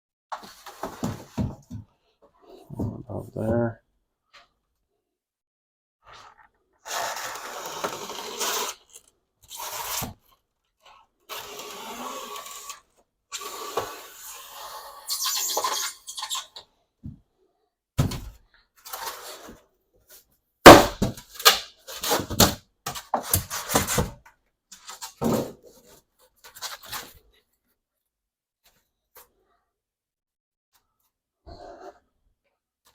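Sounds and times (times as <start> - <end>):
sharp knocks and cracks: 20.7 - 24.3.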